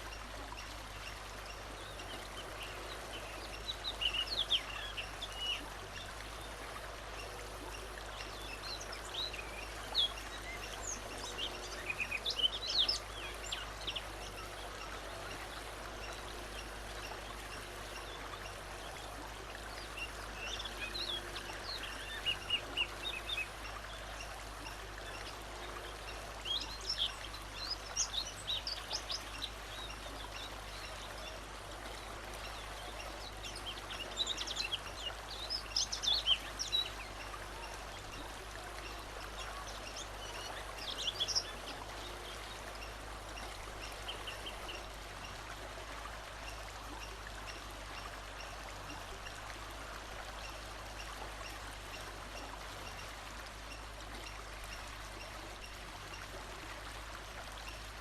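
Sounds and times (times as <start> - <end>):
songbird singing: 0.0 - 45.7
running water: 0.0 - 58.0.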